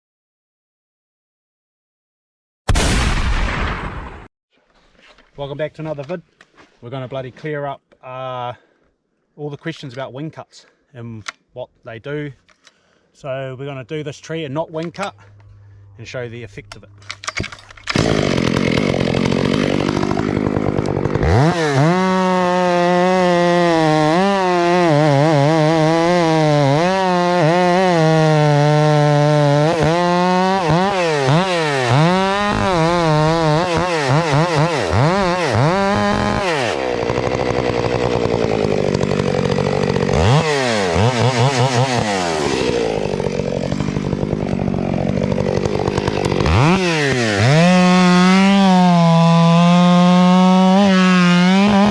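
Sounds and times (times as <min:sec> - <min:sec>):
chainsaw cutting a tree trunk: 0:17.8 - 0:51.9.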